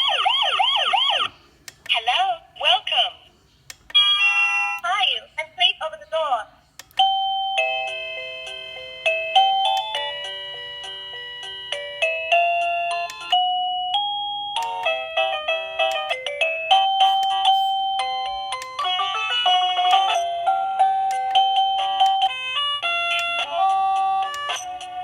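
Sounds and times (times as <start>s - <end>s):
electronic doorbell chime melody: 7.0s - 25.0s.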